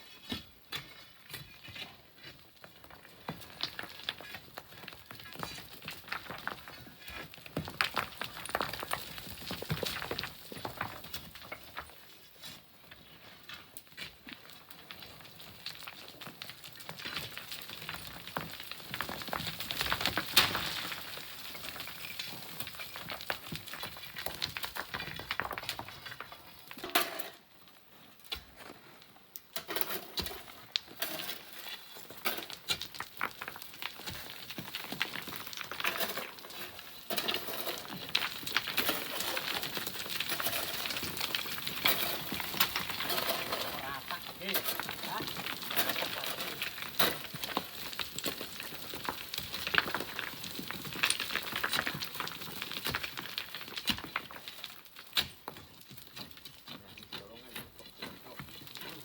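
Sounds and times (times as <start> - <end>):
sand and pebbles trickling: 30.3 - 59.0.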